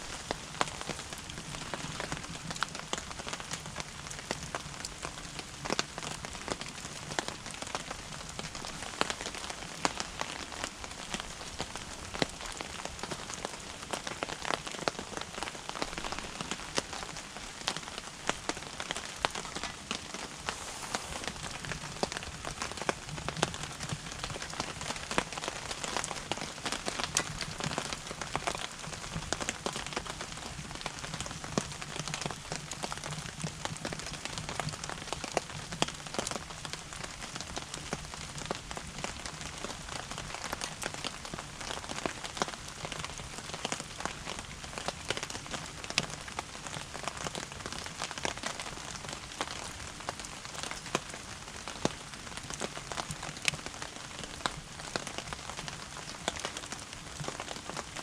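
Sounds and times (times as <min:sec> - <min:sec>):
wood fire crackling and popping: 0:00.0 - 0:30.2.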